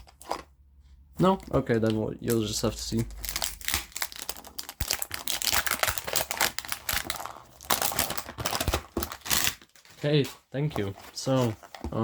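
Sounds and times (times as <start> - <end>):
packaging crinkling: 2.2 - 10.3.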